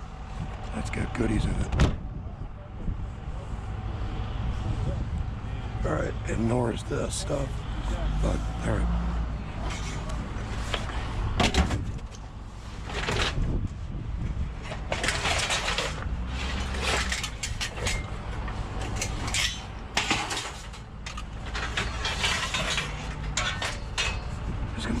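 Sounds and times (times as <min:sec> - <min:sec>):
scrap metal clattering and scraping: 0:09.4 - 0:13.7, 0:14.4 - 0:25.0.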